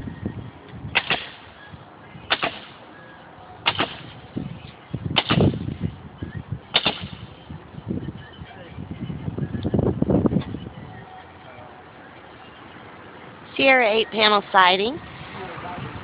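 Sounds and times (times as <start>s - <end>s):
nail gun shots: 0.9s - 1.4s, 2.3s - 2.8s, 3.6s - 4.1s, 5.2s - 5.6s, 6.7s - 7.2s.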